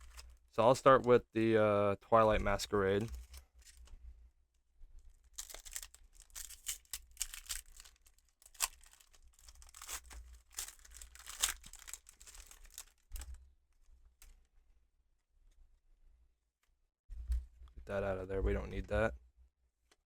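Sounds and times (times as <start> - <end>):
foil wrapper tearing and crinkling: 0.0 - 0.4, 5.2 - 13.4.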